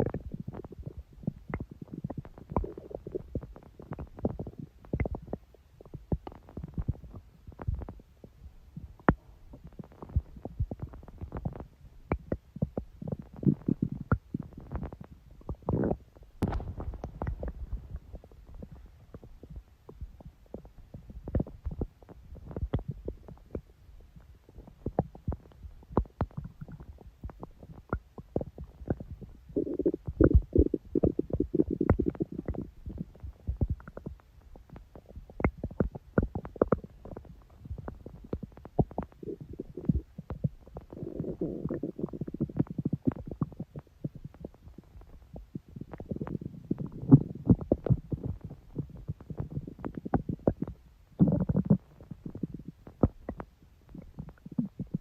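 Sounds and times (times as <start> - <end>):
stomach growling and gurgling: 0.0 - 55.0.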